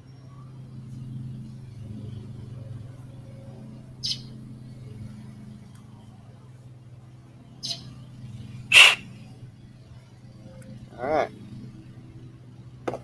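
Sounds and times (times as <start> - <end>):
short hissing sprays: 8.7 - 9.0.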